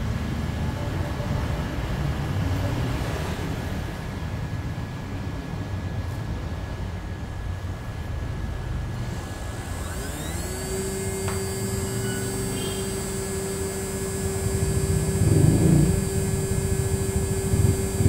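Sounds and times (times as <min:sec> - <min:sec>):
rough mechanical noise: 0:08.8 - 0:18.0
spindle motor whine: 0:08.9 - 0:18.0.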